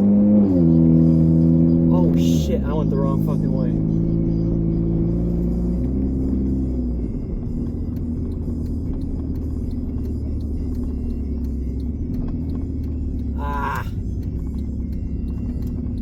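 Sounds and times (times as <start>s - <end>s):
car engine drone inside cabin: 0.0s - 16.0s
person saying ah: 13.4s - 14.0s.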